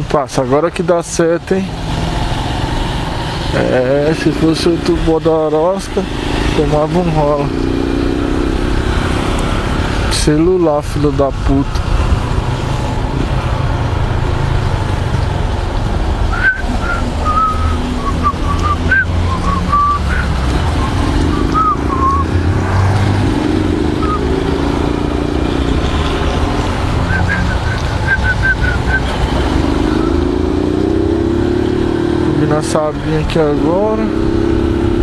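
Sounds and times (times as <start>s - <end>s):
motorcycle engine rumble: 1.5s - 35.0s
high chirping notes: 16.3s - 31.4s.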